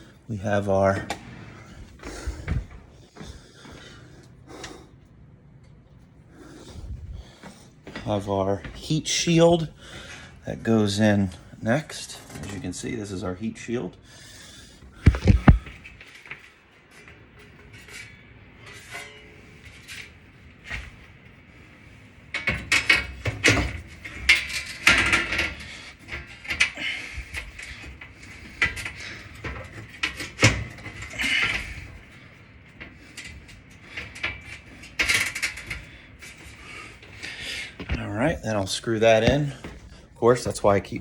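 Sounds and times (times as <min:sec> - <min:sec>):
sheet metal clattering and scraping: 0:15.0 - 0:38.0.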